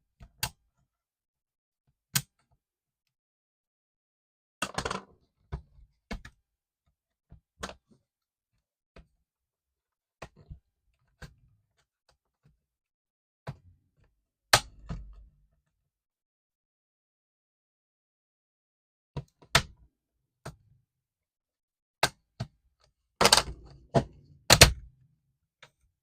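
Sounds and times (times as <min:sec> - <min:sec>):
laptop parts clicking and knocking: 0:22.0 - 0:25.0.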